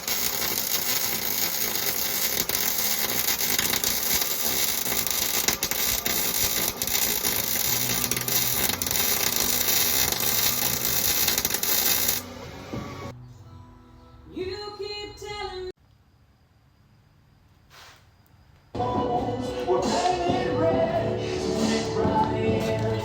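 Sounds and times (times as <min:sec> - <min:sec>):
welding crackling hiss: 0:00.0 - 0:13.1.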